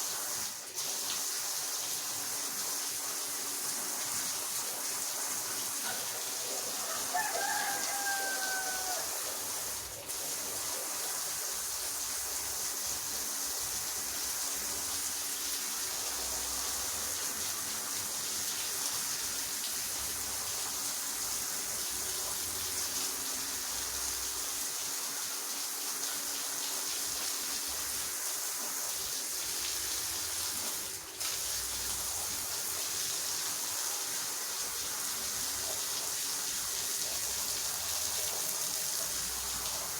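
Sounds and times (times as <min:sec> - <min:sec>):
rooster crowing: 0:06.4 - 0:09.4.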